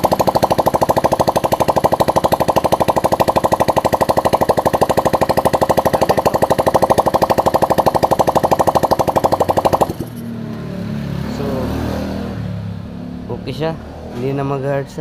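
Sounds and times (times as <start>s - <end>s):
scooter engine idling: 0.0s - 10.4s.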